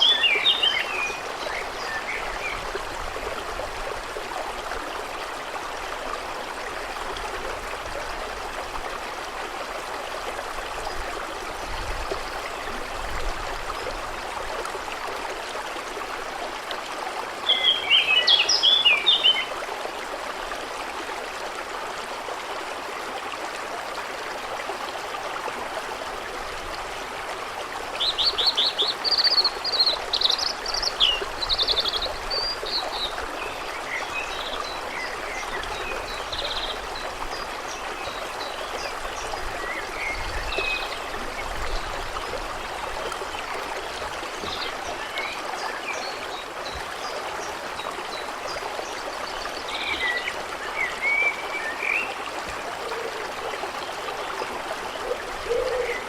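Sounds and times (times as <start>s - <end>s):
songbirds singing: 0.0s - 2.8s, 17.4s - 19.5s, 28.0s - 42.4s, 44.3s - 52.2s, 54.9s - 56.0s
stream running: 0.0s - 56.0s.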